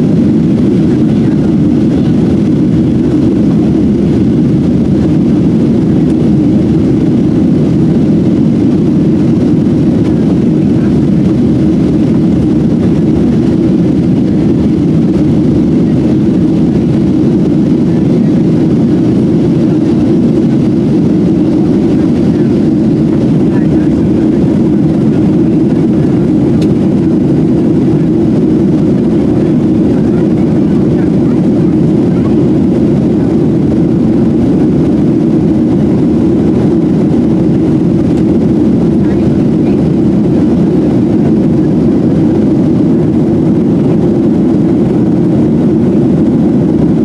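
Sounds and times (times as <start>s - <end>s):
jet engines in aircraft cabin: 0.0s - 47.0s.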